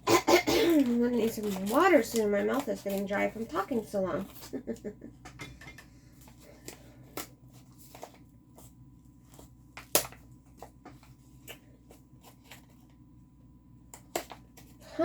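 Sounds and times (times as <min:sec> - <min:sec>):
packaging rustling and crinkling: 0:00.6 - 0:04.6, 0:06.1 - 0:13.0.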